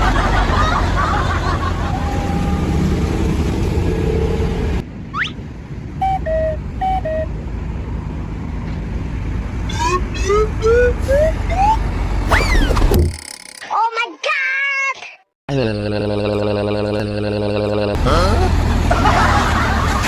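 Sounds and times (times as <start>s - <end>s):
traffic and engine noise: 0.0s - 13.7s, 17.9s - 20.0s
multi-tone electronic bus horn: 1.7s - 3.4s, 6.0s - 7.4s.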